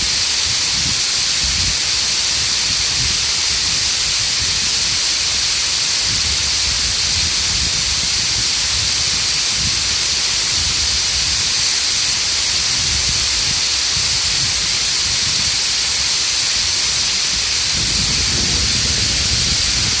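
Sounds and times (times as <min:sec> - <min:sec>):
waterfall rushing: 0:00.0 - 0:20.0
low rumble: 0:17.6 - 0:20.0.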